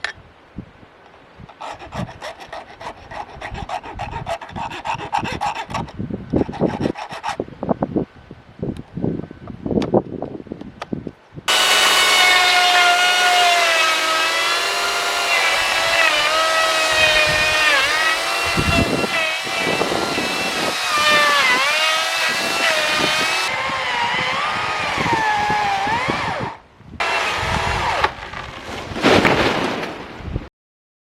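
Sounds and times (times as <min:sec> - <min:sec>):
battery chainsaw cutting wood: 0:01.6 - 0:05.9, 0:11.5 - 0:28.8.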